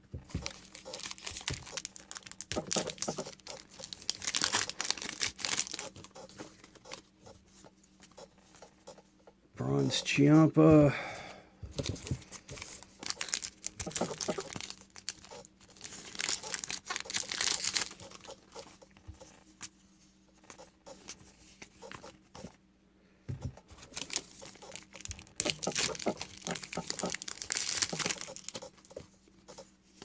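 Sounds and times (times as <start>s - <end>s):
trading cards rustling and flicking: 0.3s - 9.0s, 11.7s - 19.7s, 20.4s - 22.6s, 23.4s - 30.0s
pack wrapper crinkling: 0.4s - 7.0s, 11.8s - 18.8s, 23.8s - 28.9s.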